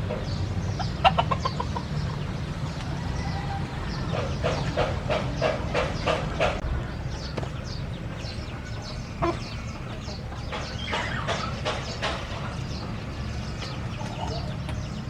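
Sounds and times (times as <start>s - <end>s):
chickens clucking: 0.0s - 15.0s
steady low rumble: 0.0s - 15.0s.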